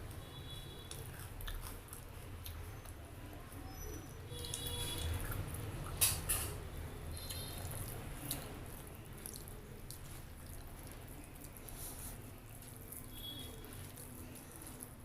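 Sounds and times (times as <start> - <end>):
wet chewing and lip smacks: 0.9 - 3.0, 6.8 - 15.0.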